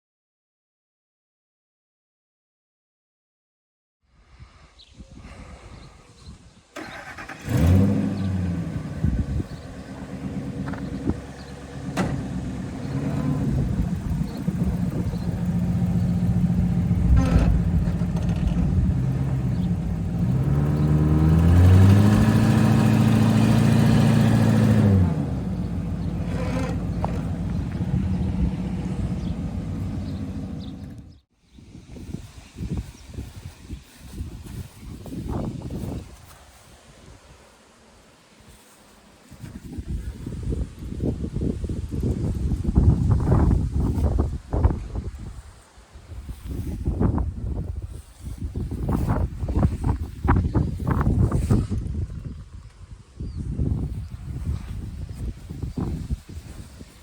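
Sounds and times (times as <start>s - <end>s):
engine revving: 6.8s - 31.2s
truck engine starting and idling: 6.8s - 31.2s.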